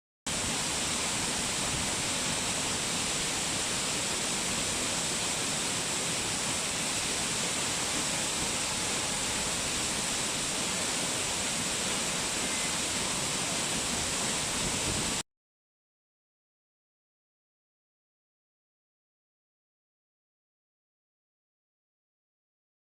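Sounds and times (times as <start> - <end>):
waterfall rushing: 0.3 - 15.2.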